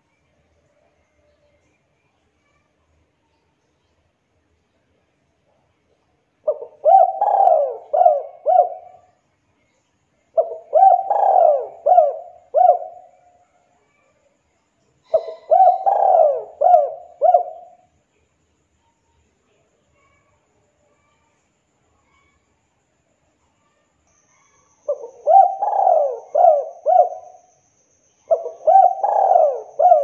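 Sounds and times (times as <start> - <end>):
dove cooing: 6.5 - 9.1, 10.4 - 13.2, 15.1 - 17.8, 24.9 - 27.4, 28.3 - 30.0.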